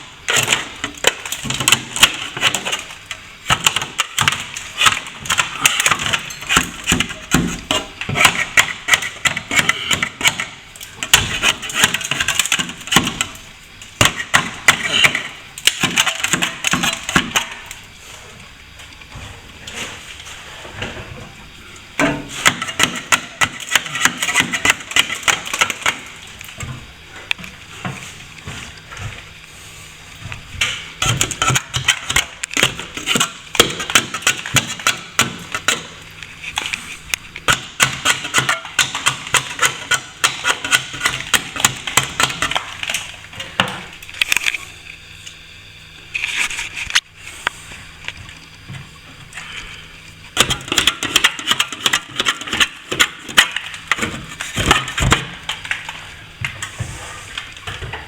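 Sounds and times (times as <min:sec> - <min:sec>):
metal tool scraping plaster: 0:00.3 - 0:13.3, 0:14.0 - 0:17.4, 0:22.3 - 0:26.1, 0:31.0 - 0:42.6.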